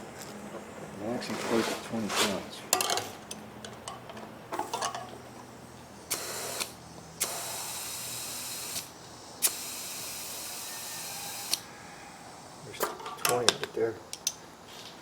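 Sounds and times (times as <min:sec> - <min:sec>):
compressed air hissing into tire: 0:04.6 - 0:13.0
inflator trigger click: 0:06.1 - 0:11.7.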